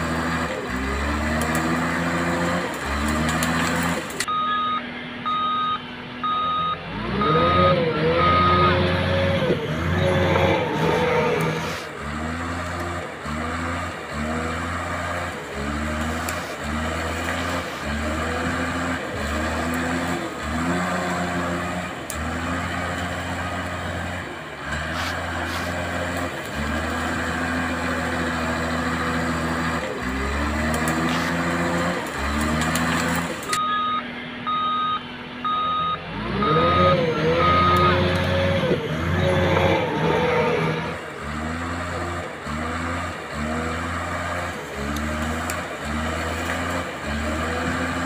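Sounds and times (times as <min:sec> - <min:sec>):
toy bulldozer drive whining: 0:00.0 - 0:48.0
reversing beeper: 0:04.3 - 0:11.7, 0:33.5 - 0:40.8.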